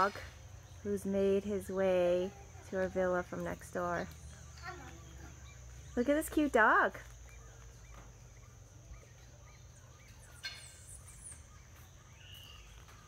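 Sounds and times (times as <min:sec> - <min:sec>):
birds chirping: 0:00.0 - 0:13.0
high insect drone: 0:00.0 - 0:13.0.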